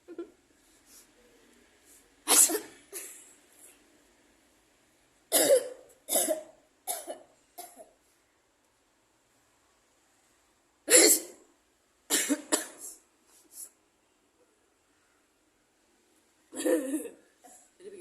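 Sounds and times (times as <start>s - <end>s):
person sneezing: 2.3s - 3.2s, 10.9s - 11.4s.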